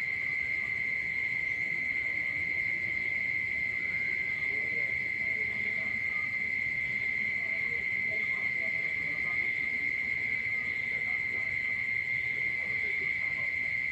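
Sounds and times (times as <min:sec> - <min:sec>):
faint frog calls: 0:00.0 - 0:13.9
high-pitched insect trill: 0:00.0 - 0:13.9.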